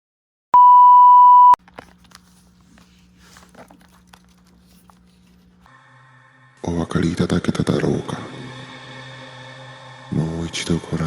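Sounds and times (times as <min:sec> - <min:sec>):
soft clicks and rustles: 0:01.6 - 0:05.7
faint low hum: 0:01.6 - 0:05.8.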